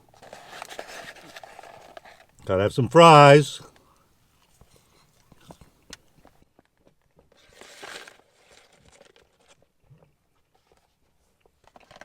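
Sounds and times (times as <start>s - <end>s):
paper packaging clicks and crackles: 0.0s - 2.4s, 6.6s - 9.7s, 11.6s - 12.0s
paper rustle: 0.2s - 2.3s.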